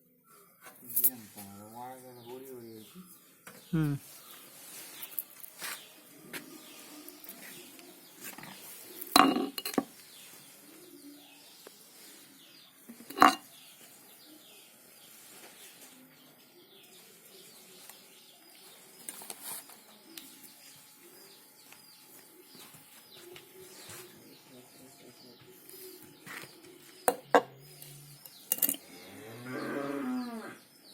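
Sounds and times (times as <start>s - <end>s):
birds chirping faintly: 0.0s - 30.9s
metal tools clinking: 9.1s - 9.9s, 13.0s - 13.4s, 28.2s - 28.8s.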